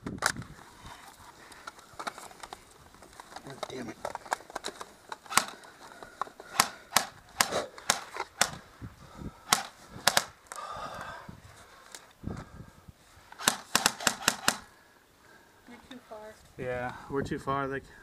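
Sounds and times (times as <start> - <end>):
airsoft gun shots: 5.3 - 5.5, 6.5 - 8.6, 9.5 - 10.4, 13.4 - 14.7.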